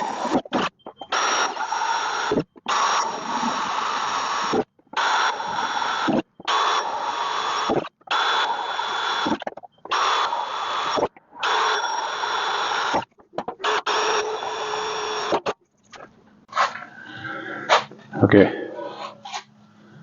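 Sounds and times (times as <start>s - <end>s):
electric drill whining through metal: 1.1s - 15.5s.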